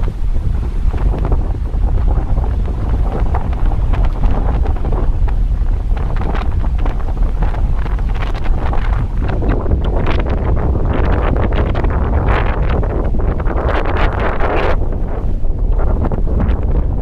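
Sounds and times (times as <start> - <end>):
strong wind buffeting microphone: 0.0 - 17.0.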